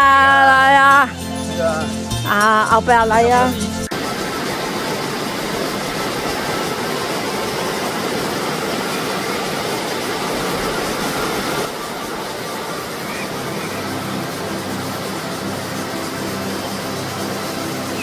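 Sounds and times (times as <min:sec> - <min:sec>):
mountain stream rushing: 0:03.8 - 0:18.0.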